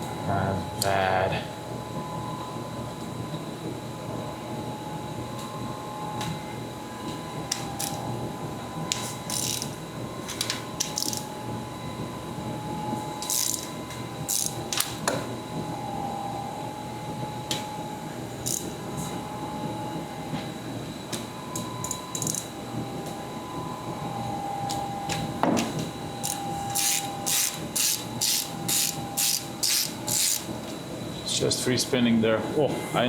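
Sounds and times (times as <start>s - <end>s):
ratchet clicks: 7.5s - 8.0s, 8.9s - 9.7s, 10.4s - 11.3s, 13.2s - 13.7s, 14.3s - 14.9s, 18.4s - 18.7s, 22.1s - 22.4s, 26.2s - 30.5s.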